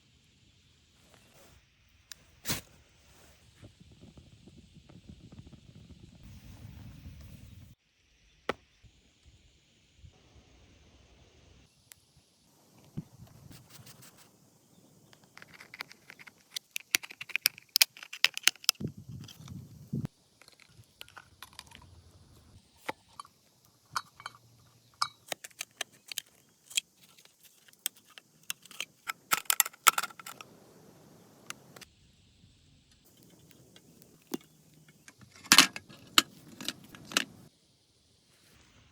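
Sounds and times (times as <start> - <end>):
small metal pieces clinking: 35.3 - 37.4.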